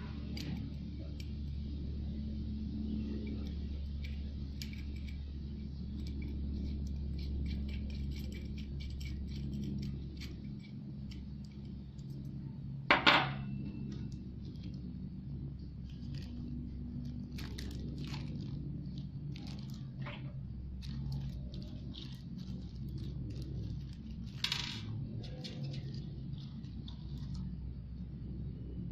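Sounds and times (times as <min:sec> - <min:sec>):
low hum: 0:00.0 - 0:28.9
small metal parts clinking: 0:05.9 - 0:12.1, 0:20.8 - 0:26.9.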